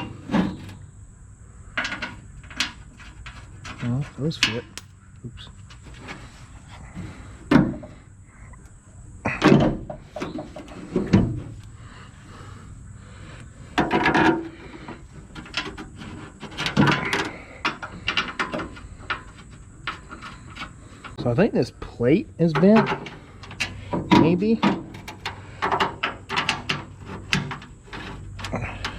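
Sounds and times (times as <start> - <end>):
sheet metal clunking and rattling: 13.7 - 21.2, 22.4 - 28.9.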